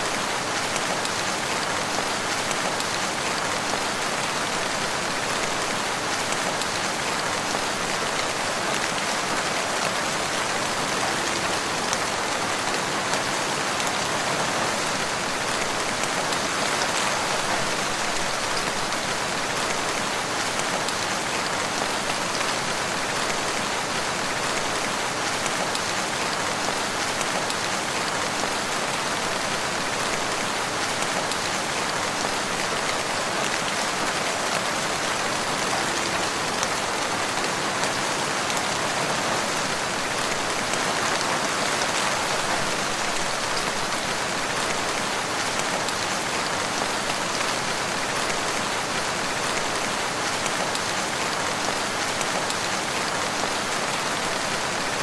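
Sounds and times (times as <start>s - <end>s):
steady rain falling: 0.0s - 55.0s.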